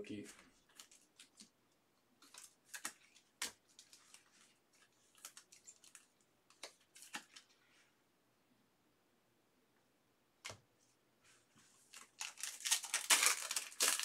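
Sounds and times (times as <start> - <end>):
trading cards clicking and snapping: 2.2 - 4.0.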